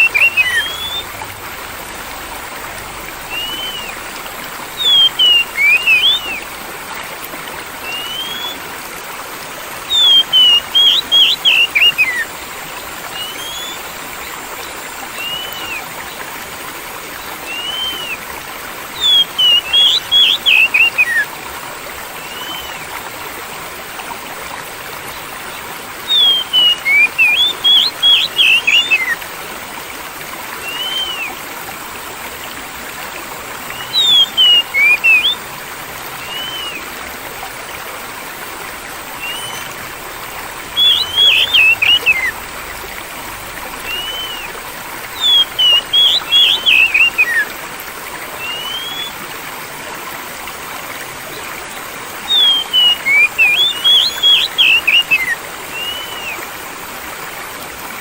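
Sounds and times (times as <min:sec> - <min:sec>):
songbird chirping: 0:00.0 - 0:01.1, 0:03.3 - 0:04.0, 0:04.7 - 0:06.5, 0:07.8 - 0:08.6, 0:09.9 - 0:12.3, 0:13.1 - 0:13.9, 0:19.0 - 0:21.3, 0:26.1 - 0:29.2, 0:33.6 - 0:35.5, 0:36.2 - 0:36.8, 0:39.2 - 0:39.8, 0:40.7 - 0:42.4, 0:43.8 - 0:47.4, 0:48.4 - 0:49.2, 0:52.3 - 0:56.4
stream trickling: 0:00.0 - 0:58.0.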